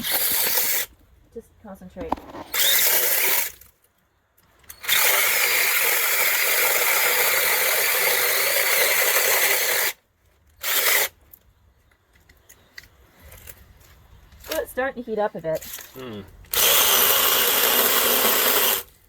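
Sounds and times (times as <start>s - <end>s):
electric chainsaw cutting wood: 0.0s - 0.9s, 2.4s - 3.6s, 4.8s - 10.0s, 10.6s - 11.1s, 16.5s - 19.0s.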